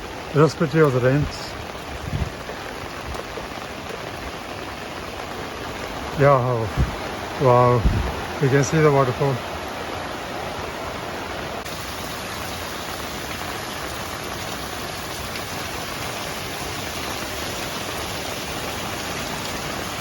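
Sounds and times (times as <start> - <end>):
heavy rain: 0.0 - 20.0
waterfall rushing: 0.0 - 20.0.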